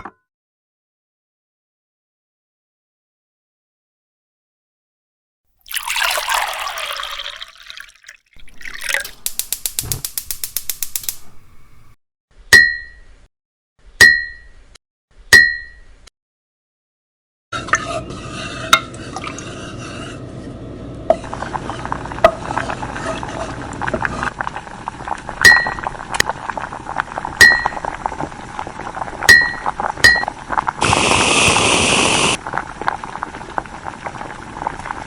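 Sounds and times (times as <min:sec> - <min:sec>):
liquid pouring: 0:05.6 - 0:11.2
stirring: 0:05.6 - 0:11.8, 0:17.6 - 0:20.4, 0:21.2 - 0:26.7
loud even hiss: 0:30.8 - 0:32.4.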